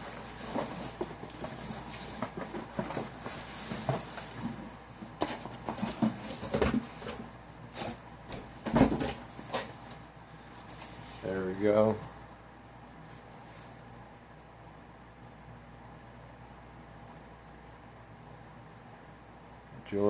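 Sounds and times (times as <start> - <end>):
cardboard and paper rustling: 0.0 - 8.0.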